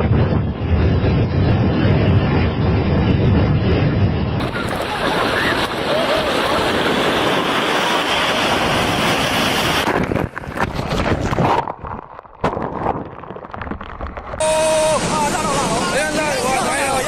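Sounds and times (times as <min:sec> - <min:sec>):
wind buffeting microphone: 0:00.0 - 0:17.0
rushing sea: 0:04.4 - 0:17.0.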